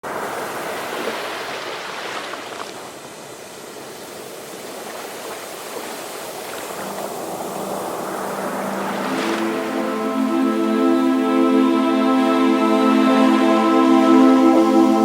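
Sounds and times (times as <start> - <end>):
ocean waves surf: 0.0 - 15.0
faint music: 6.7 - 15.0.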